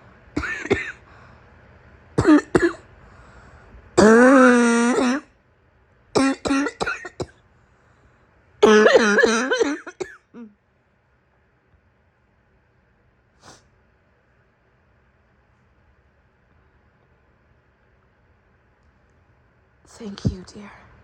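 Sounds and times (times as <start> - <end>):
woman coughing: 0.4 - 1.0, 2.2 - 2.8, 4.0 - 5.2, 6.2 - 7.4, 8.6 - 10.6.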